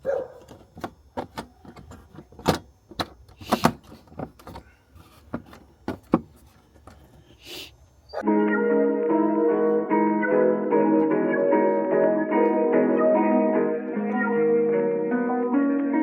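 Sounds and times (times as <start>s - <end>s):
plastic clicks and knocks: 0.4s - 4.7s
music: 8.2s - 16.0s.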